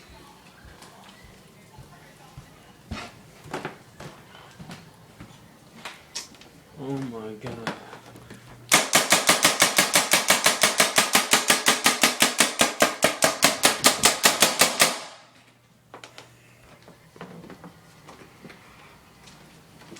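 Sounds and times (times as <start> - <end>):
rapid sharp knocks: 8.7 - 15.1.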